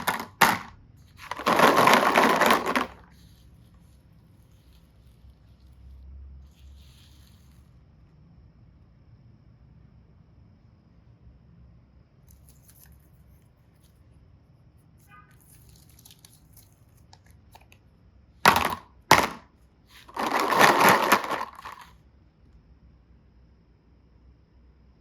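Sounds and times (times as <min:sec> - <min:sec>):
crackling and rustling: 0:00.0 - 0:07.8, 0:15.4 - 0:17.8, 0:18.4 - 0:22.0
faint crinkling: 0:14.8 - 0:22.0.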